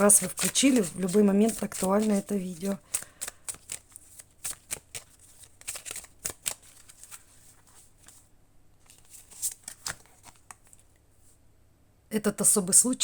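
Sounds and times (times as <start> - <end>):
cards being shuffled: 0.0 - 10.9.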